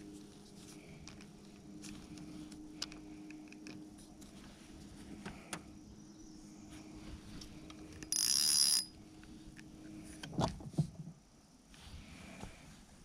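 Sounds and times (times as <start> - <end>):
small electric motor humming: 8.1 - 9.0.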